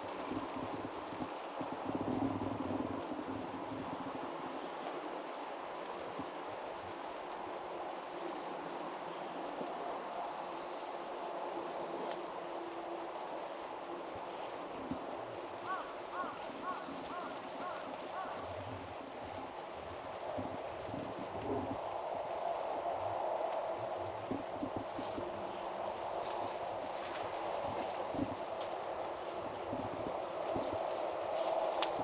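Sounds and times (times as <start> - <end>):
steady rain falling: 0.0 - 32.0.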